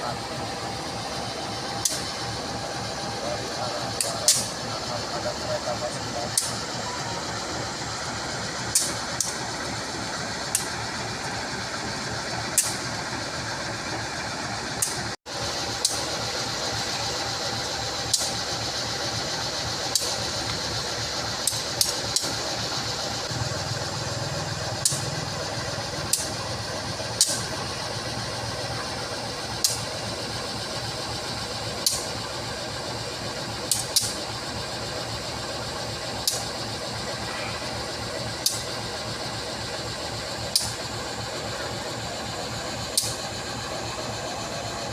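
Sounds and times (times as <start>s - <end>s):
diesel locomotive idling: 0.0s - 44.9s
sharp clicks: 4.0s - 4.6s, 33.7s - 34.2s, 36.2s - 36.6s.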